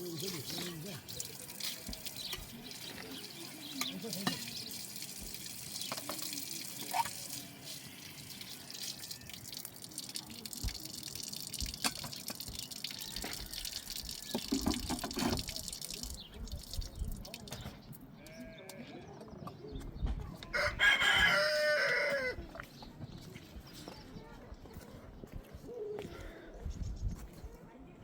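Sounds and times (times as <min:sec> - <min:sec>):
water trickling: 0:00.0 - 0:18.3
water drips: 0:00.0 - 0:18.4.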